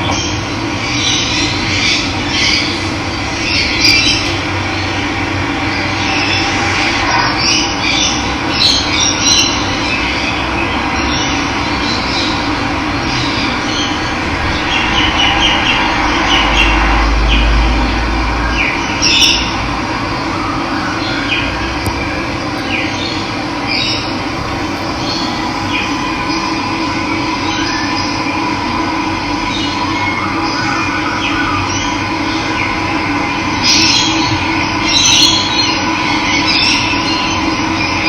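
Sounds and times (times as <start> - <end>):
low rumble: 12.3 - 20.2, 21.6 - 29.2
birds chirping: 20.9 - 28.3.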